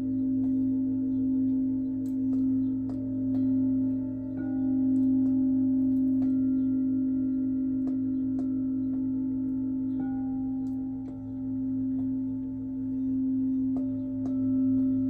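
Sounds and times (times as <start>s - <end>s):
singing bowl ringing: 0.0s - 15.0s
singing bowl strikes: 0.0s - 15.0s.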